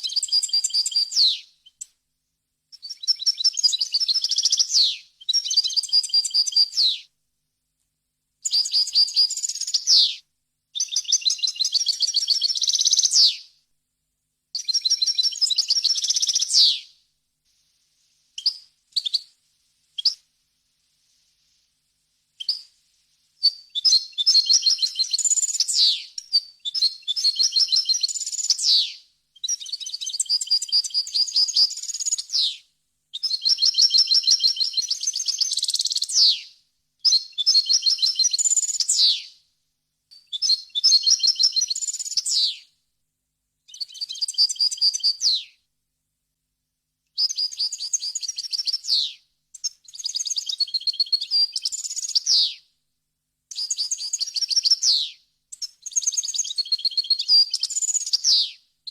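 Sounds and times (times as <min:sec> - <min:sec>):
goldfinch twittering song: 0:23.4 - 0:32.5.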